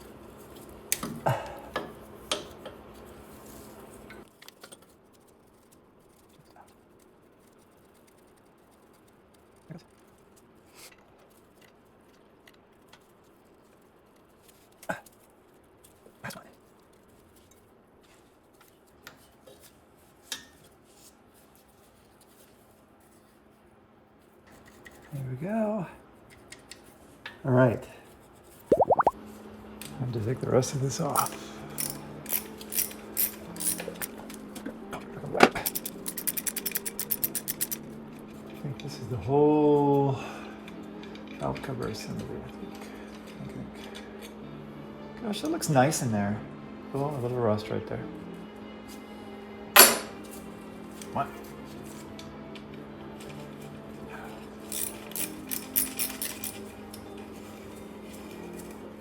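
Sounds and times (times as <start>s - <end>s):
hand tools clicking on metal: 31.1s - 34.4s, 35.4s - 37.8s, 54.7s - 56.7s.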